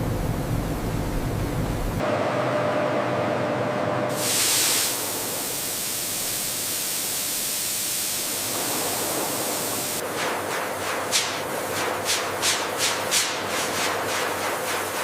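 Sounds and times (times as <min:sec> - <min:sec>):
steady rushing hiss: 0:04.2 - 0:15.0.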